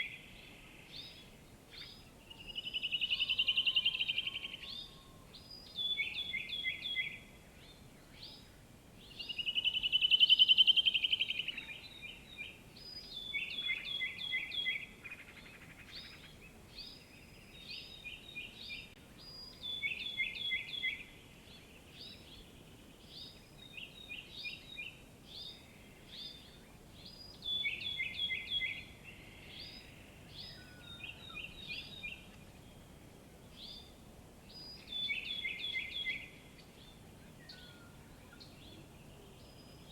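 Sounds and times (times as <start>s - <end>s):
faint steady hiss: 0.0s - 39.9s
songbirds singing: 0.0s - 39.9s
bird trill: 1.0s - 7.2s.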